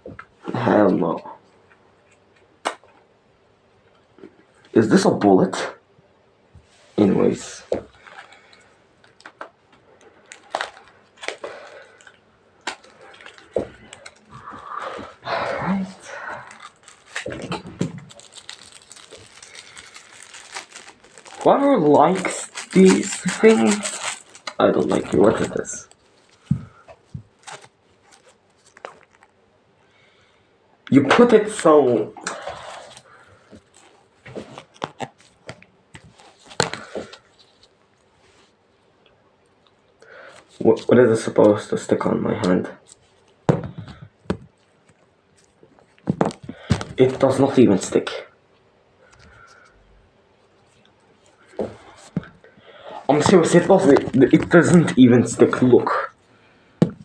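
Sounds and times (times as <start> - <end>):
packaging crinkling: 7.8 - 29.4, 32.4 - 38.1, 42.8 - 47.4, 53.0 - 55.8
sharp crackles: 16.0 - 29.3.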